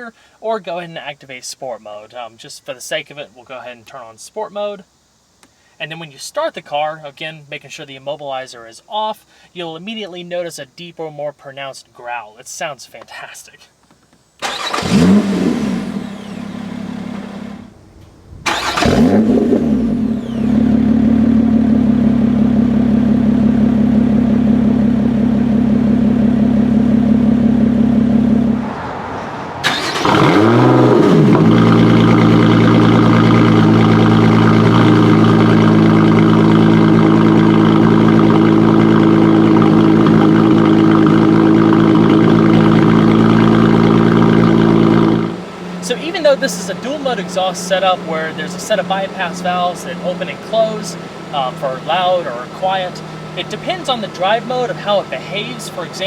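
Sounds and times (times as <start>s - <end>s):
car engine starting and idling: 14.4s - 56.0s.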